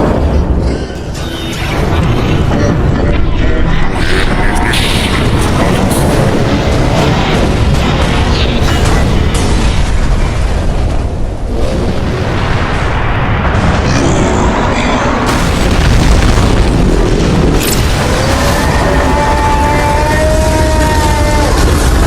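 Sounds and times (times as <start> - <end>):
music: 0.0 - 7.4
explosion booms: 0.0 - 22.0
low rumbling: 0.0 - 22.0.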